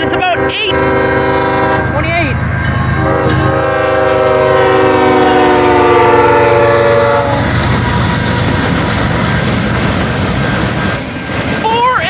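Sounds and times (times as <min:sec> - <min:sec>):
train horn blaring a chord: 0:00.0 - 0:07.5
locomotives rumbling and clattering: 0:00.0 - 0:12.0.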